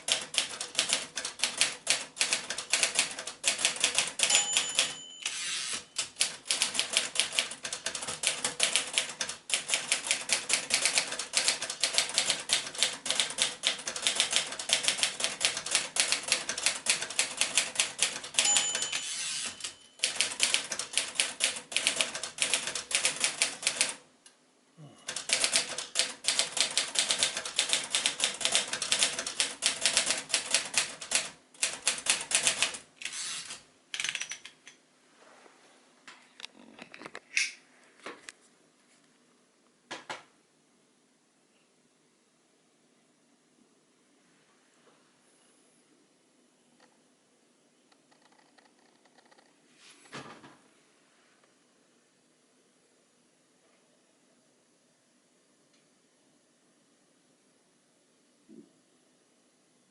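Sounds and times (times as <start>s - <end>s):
typewriter keys clacking: 0.0s - 24.0s, 25.1s - 34.6s
typewriter bell ding: 4.1s - 6.2s, 18.3s - 20.4s.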